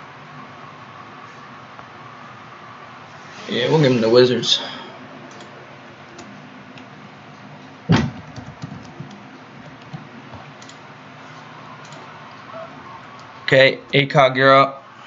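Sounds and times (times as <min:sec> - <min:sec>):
steady low hum: 0:00.0 - 0:15.0
dull knock: 0:07.9 - 0:09.1
faint clicks: 0:11.8 - 0:12.1.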